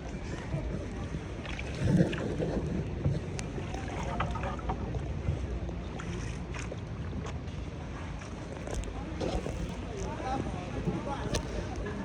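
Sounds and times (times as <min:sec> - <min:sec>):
wind on microphone: 0:00.0 - 0:07.2
water around boat: 0:00.0 - 0:12.0.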